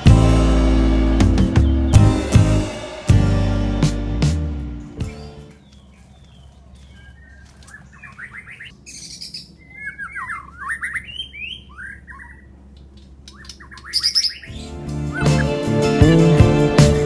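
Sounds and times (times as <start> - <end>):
songbird singing: 4.8 - 15.5.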